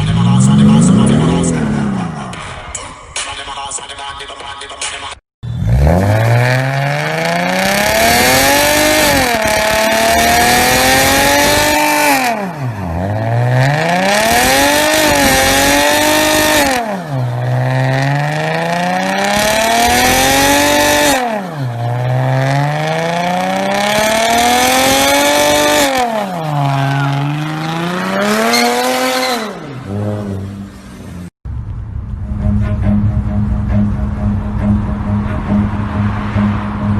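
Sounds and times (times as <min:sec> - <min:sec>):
car engine revving: 0:00.0 - 0:02.7, 0:05.4 - 0:36.9.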